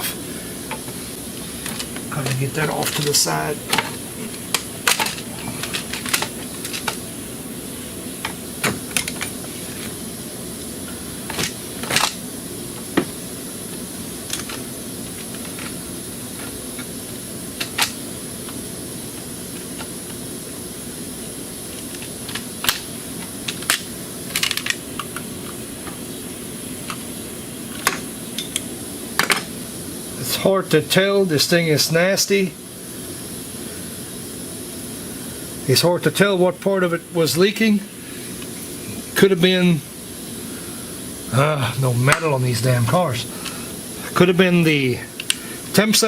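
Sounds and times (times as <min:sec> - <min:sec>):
steady background hum: 0:00.0 - 0:46.0.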